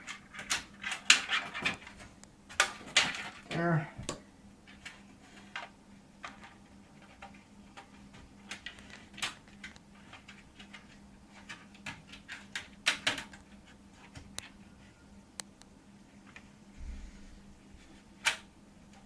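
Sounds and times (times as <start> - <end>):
cables and plastic parts handled: 0.0 - 15.0
faint steady hum: 0.0 - 19.0.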